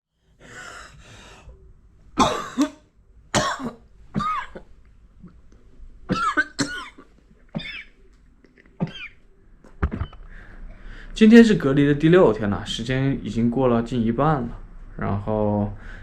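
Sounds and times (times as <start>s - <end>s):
man coughing: 2.2s - 2.8s, 3.4s - 4.7s, 6.1s - 7.9s, 8.8s - 9.2s
throat clearing: 8.6s - 9.2s.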